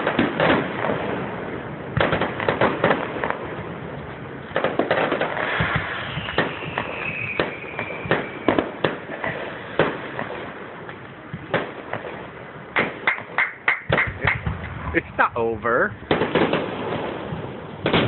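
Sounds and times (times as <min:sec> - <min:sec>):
firework bangs and pops: 0:00.0 - 0:18.0
descending firework whistle: 0:05.3 - 0:09.9.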